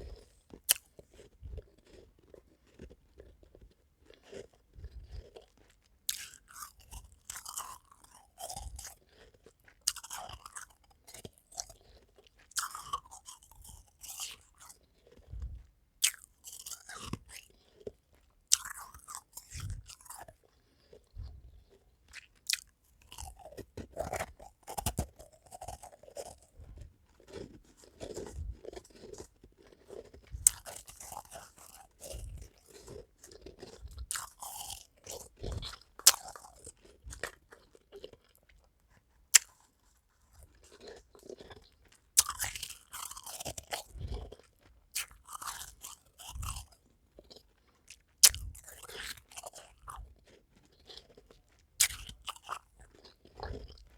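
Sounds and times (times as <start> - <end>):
crunchy chewing: 0.0 - 53.9
ice cubes cracking between teeth: 50.6 - 53.8.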